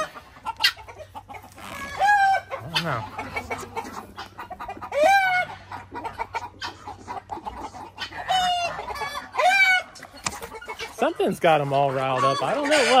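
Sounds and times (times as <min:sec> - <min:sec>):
poultry alarm calls: 0:00.0 - 0:13.0
soft clucking: 0:00.0 - 0:13.0.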